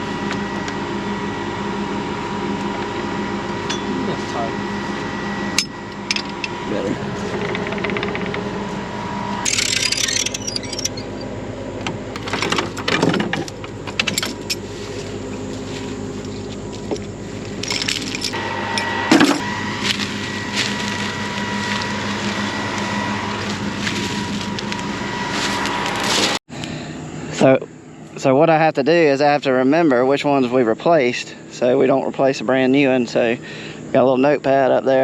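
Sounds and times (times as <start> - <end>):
steady machine hum: 0.0 - 35.0
clinks and knocks on metal parts: 17.6 - 18.4.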